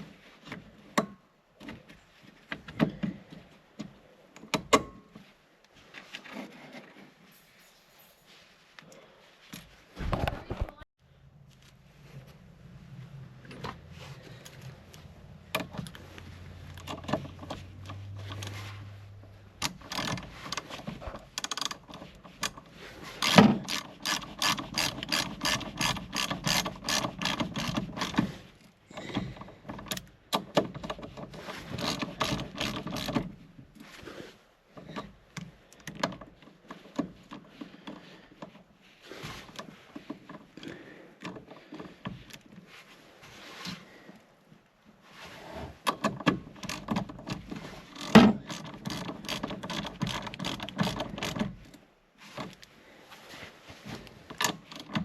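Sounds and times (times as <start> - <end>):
ratchet wrench clicking: 23.2 - 28.1.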